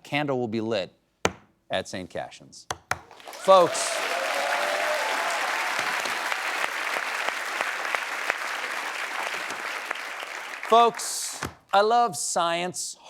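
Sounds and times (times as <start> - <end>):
audience applauding and cheering: 3.1 - 11.5.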